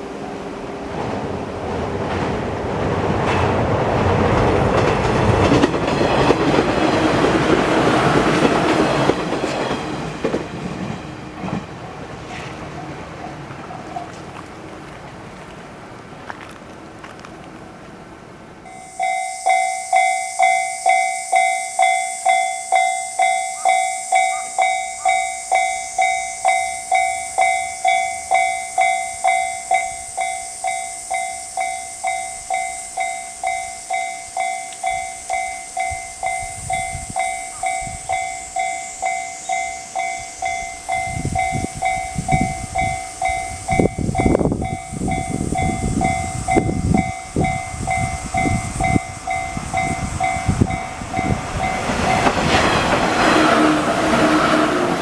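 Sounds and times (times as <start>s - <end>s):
train rumble: 0.0s - 20.0s, 23.2s - 55.0s
level crossing warning bell: 18.6s - 55.0s.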